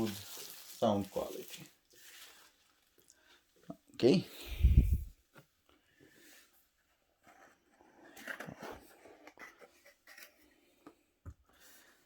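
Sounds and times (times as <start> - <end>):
packaging rustling and scraping: 0.0 - 3.0, 7.1 - 10.7.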